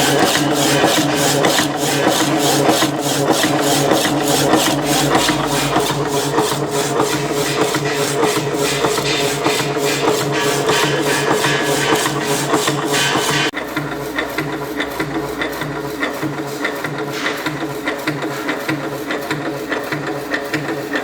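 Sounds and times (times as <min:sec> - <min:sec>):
steady hum: 0:00.0 - 0:13.5
machinery rhythmic rasp: 0:00.0 - 0:21.0.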